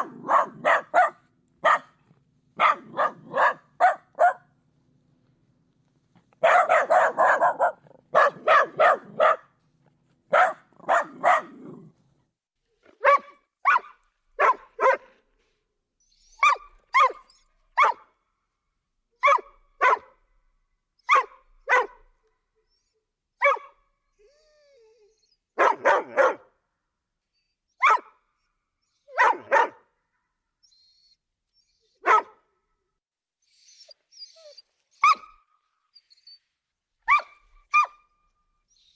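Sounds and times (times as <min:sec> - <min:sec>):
dog barking: 0:00.0 - 0:02.0, 0:02.6 - 0:04.5, 0:06.4 - 0:09.6, 0:10.3 - 0:11.9, 0:13.0 - 0:15.2, 0:16.4 - 0:17.2, 0:17.8 - 0:18.1, 0:19.2 - 0:20.2, 0:21.0 - 0:22.1, 0:23.4 - 0:23.8, 0:25.6 - 0:26.5, 0:27.8 - 0:28.2, 0:29.1 - 0:29.9, 0:32.0 - 0:32.5, 0:35.0 - 0:35.4, 0:37.0 - 0:38.1.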